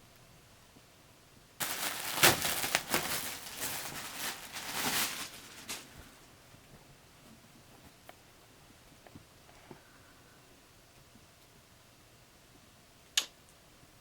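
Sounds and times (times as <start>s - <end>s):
packaging rustling and crinkling: 1.6s - 6.3s.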